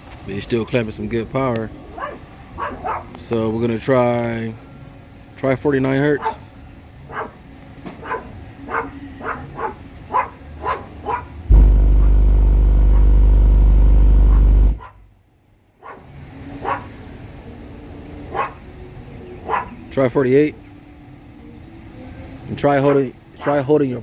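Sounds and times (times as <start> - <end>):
dog barking: 2.0 - 3.1, 6.2 - 6.5, 7.1 - 7.4, 8.0 - 11.4, 15.8 - 16.9, 18.3 - 18.7, 19.4 - 19.8, 22.8 - 23.6
subwoofer bass test tone: 11.5 - 14.9.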